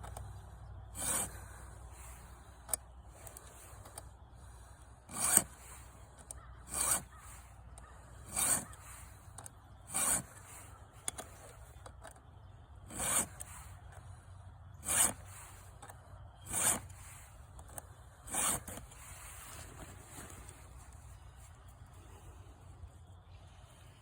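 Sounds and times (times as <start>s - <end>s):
file rasping on saw chain: 1.0s - 2.3s, 5.1s - 11.6s, 12.9s - 13.8s, 14.8s - 15.7s, 16.4s - 17.4s, 18.2s - 19.6s.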